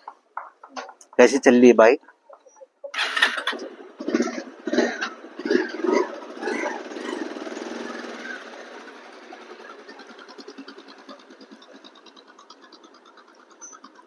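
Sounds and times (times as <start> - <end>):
motorcycle engine revving: 2.9 - 14.0.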